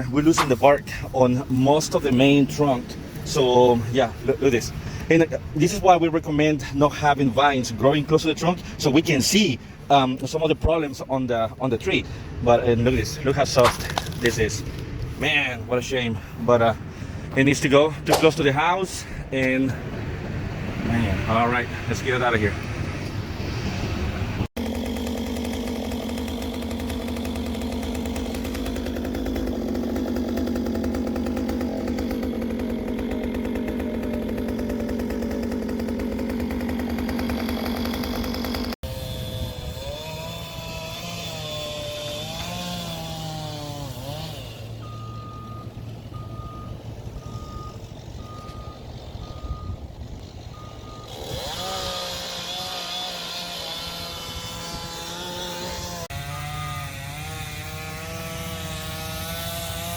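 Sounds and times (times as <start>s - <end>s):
machinery engines revving: 19.2s - 59.9s.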